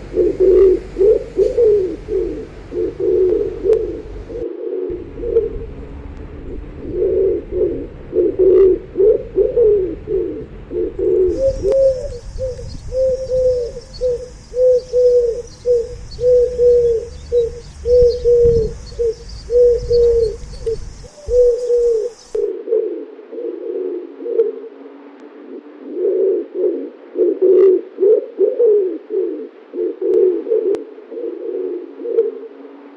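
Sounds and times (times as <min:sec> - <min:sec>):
faint high hiss: 0:00.0 - 0:22.5
pigeons cooing: 0:00.0 - 0:32.9.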